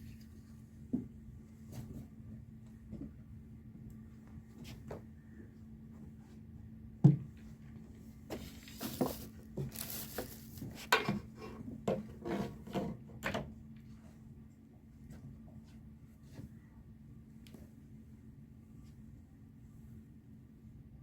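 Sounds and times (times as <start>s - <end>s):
handling knocks and rubbing: 8.2s - 13.0s.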